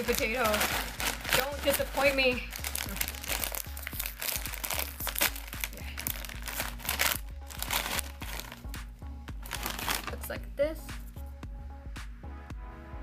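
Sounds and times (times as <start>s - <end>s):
plastic wrapper crinkling: 0.0s - 8.8s, 9.4s - 10.4s
background music with steady beat: 0.0s - 13.0s.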